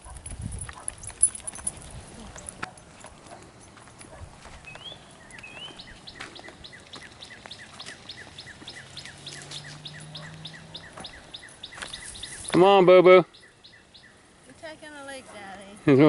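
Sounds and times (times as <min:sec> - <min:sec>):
songbird whistles and chirps: 0:04.6 - 0:12.6.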